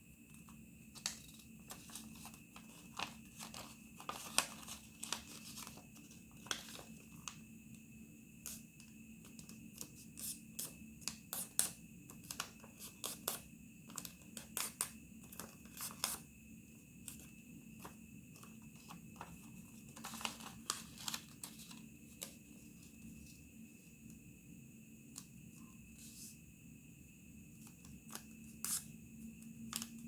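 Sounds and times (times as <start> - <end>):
faint steady hum: 0.0 - 30.0
paper folding crinkles: 0.4 - 7.4, 17.0 - 23.4.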